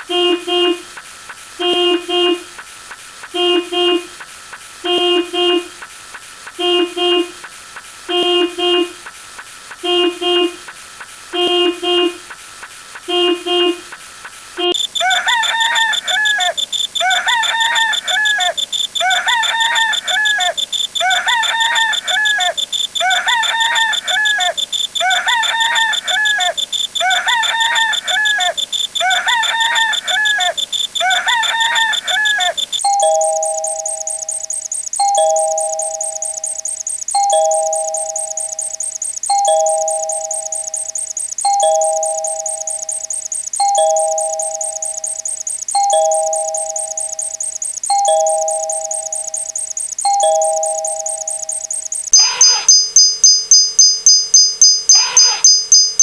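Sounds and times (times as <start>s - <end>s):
rooster crowing: 14.8s - 32.6s
steady high-pitched tone: 14.8s - 56.0s
two-tone doorbell chime: 32.8s - 56.0s.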